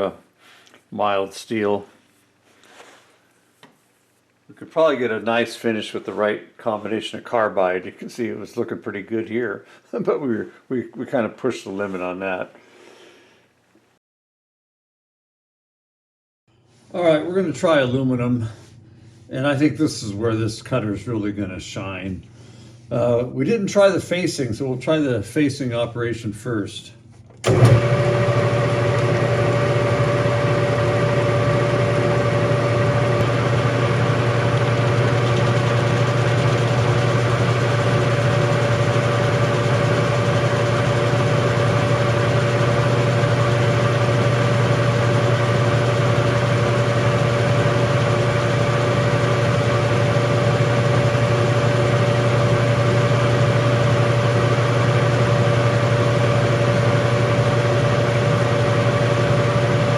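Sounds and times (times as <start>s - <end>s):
lathe motor hum: 27.4s - 59.9s
lathe whine: 27.4s - 59.9s.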